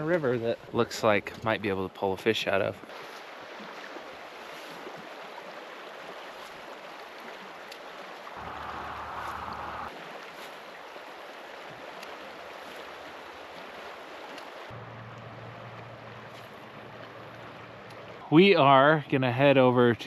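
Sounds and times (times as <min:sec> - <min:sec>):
river water rushing over rocks: 0:08.3 - 0:14.9.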